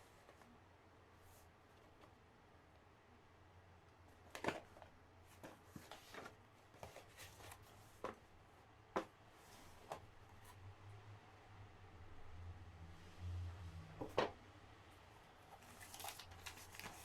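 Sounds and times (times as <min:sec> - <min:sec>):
packaging rustling: 0:15.5 - 0:17.0.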